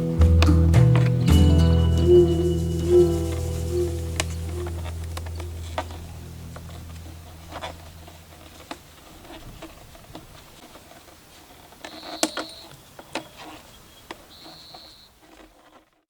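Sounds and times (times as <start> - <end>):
high steady tone: 1.3 - 9.0.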